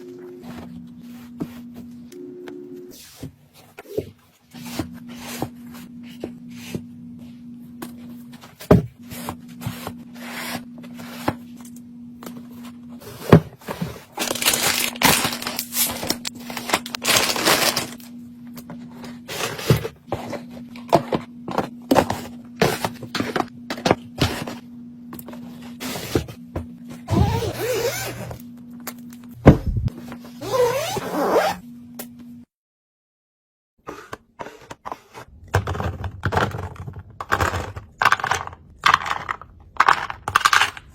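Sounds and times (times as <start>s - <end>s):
low steady hum: 0.0s - 32.5s
plastic packaging crinkling: 14.1s - 18.1s.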